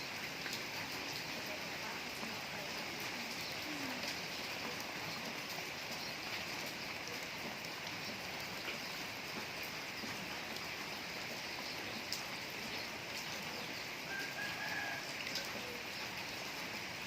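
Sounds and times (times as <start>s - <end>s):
steady rain falling: 0.0s - 17.0s.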